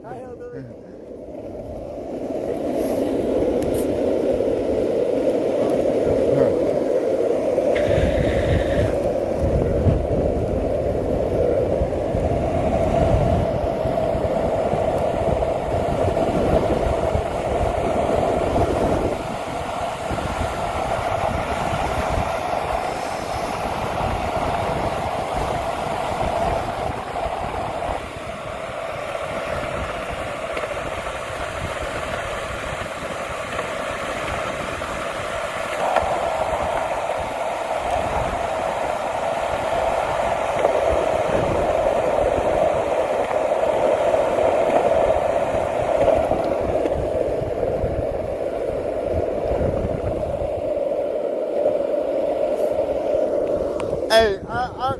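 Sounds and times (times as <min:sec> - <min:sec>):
crosswind buffeting: 0:00.0 - 0:54.9.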